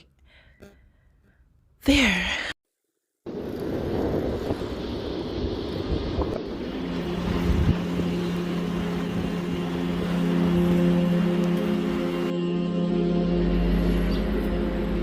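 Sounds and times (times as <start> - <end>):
low rumbling noise: 3.2 - 15.0
sustained music chords: 6.4 - 15.0.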